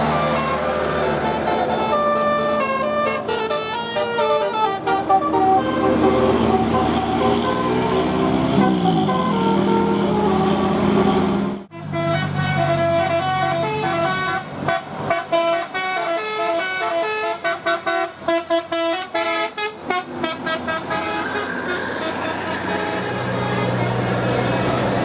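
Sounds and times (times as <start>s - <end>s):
musical bus horn playing a tune: 0.0s - 25.0s.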